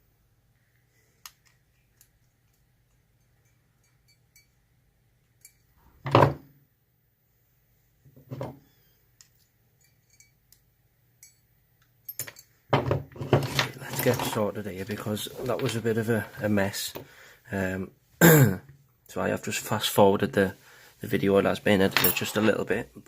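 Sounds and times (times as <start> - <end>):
metal clicks of tools: 5.2 - 5.8, 9.2 - 12.5.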